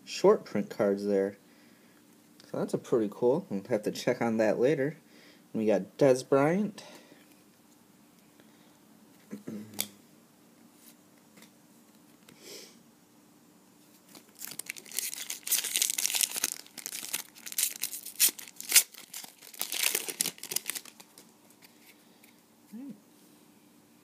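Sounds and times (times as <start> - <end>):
wrapper tearing and crinkling: 14.1 - 21.3.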